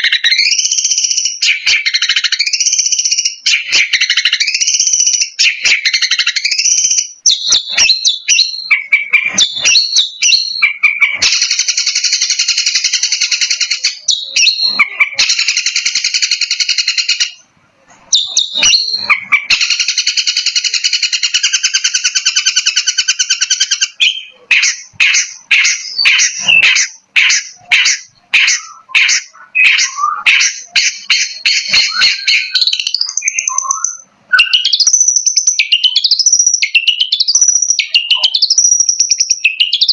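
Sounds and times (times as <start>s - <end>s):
bird harsh scratchy chatter: 10.6s - 33.4s.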